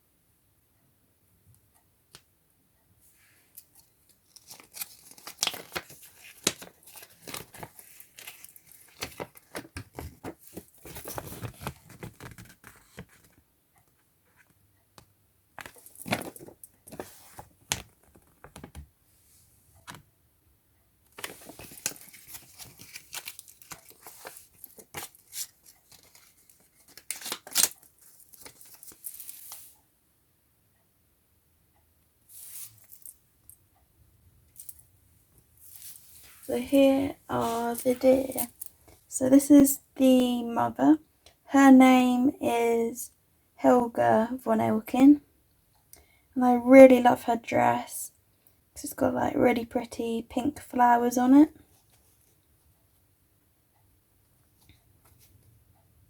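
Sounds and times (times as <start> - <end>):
packaging tearing and crinkling: 4.3 - 9.7, 21.2 - 29.6.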